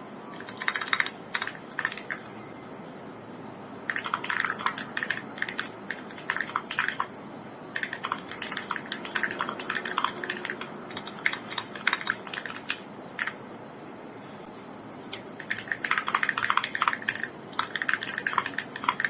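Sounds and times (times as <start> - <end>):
mechanical keyboard keystroke clacks: 0.4 - 2.2, 3.9 - 7.1, 7.8 - 13.4, 15.1 - 19.0.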